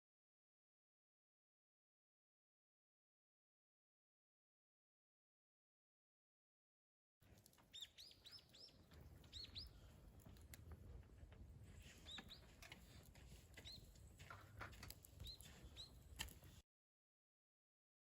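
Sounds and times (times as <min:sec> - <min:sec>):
small birds chirping: 0:07.2 - 0:16.6.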